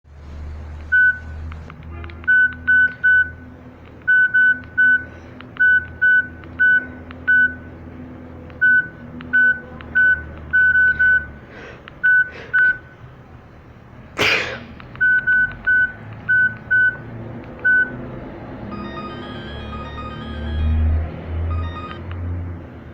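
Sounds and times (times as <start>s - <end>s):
phone keypad beeps: 0.9s - 1.4s, 2.2s - 3.5s, 4.1s - 7.8s, 8.6s - 11.4s, 12.0s - 13.0s, 15.0s - 17.0s, 17.6s - 18.0s, 18.7s - 20.8s, 21.5s - 22.1s.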